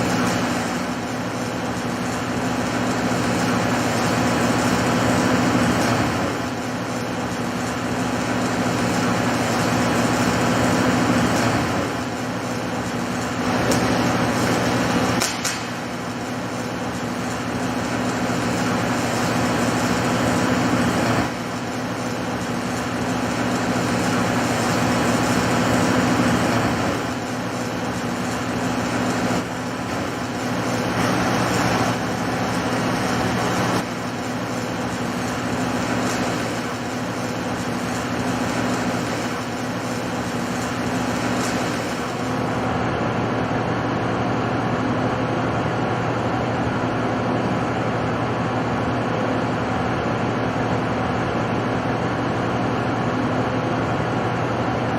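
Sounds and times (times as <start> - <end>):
welding hiss: 0.0 - 42.7
welding machine hum: 0.0 - 54.9.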